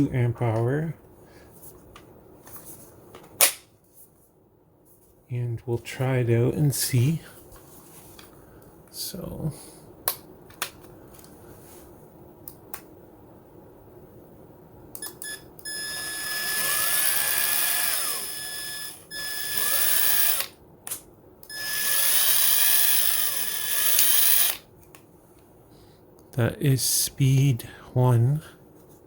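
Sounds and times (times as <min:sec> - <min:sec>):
impact wrench motor whine: 0:15.7 - 0:20.6, 0:21.5 - 0:24.6.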